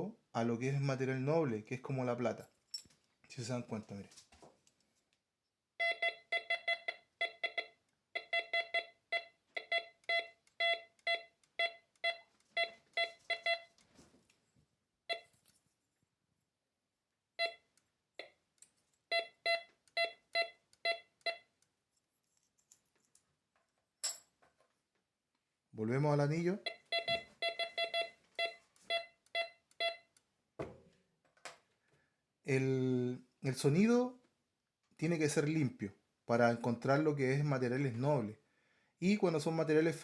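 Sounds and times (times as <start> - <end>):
metal detector beep tone: 5.8 - 13.7, 17.4 - 17.6, 19.1 - 21.5, 26.6 - 30.1.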